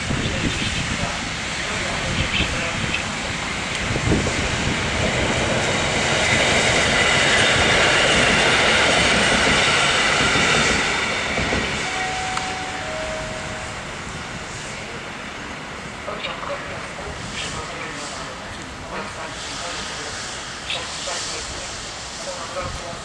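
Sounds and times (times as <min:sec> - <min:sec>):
train rolling past: 0:00.0 - 0:23.0
high squeals: 0:10.2 - 0:14.8.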